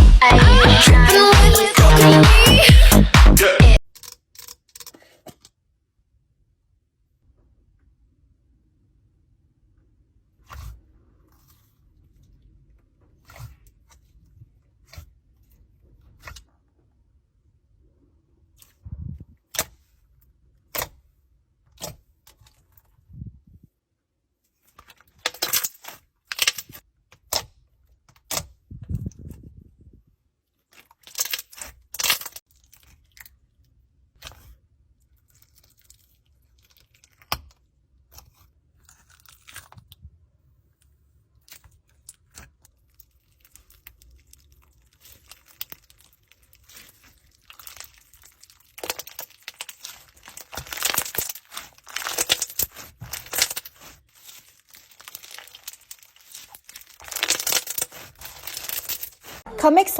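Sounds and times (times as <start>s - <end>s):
slime clicks and crackles: 30.7s - 33.4s, 35.2s - 40.0s, 41.4s - 59.4s.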